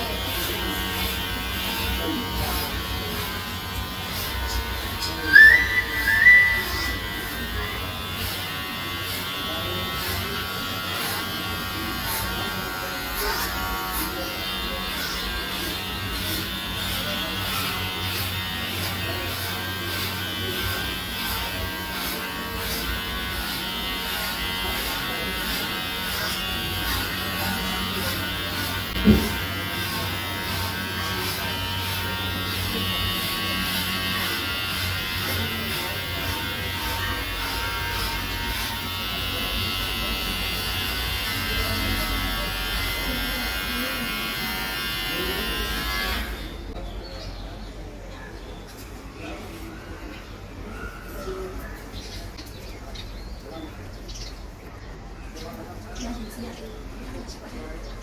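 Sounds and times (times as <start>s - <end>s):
electric hair clippers buzzing: 0.0s - 46.6s
high two-note tone: 5.3s - 7.3s.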